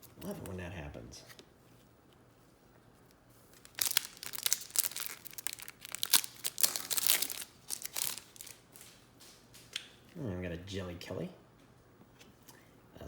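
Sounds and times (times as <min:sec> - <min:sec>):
foil wrapper tearing and crinkling: 0:03.5 - 0:08.9.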